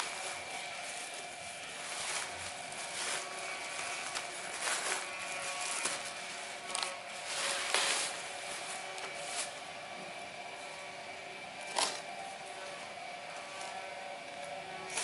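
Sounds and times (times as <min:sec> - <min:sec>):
loud scrapes: 0:00.0 - 0:09.6
packaging rustling: 0:00.0 - 0:09.6.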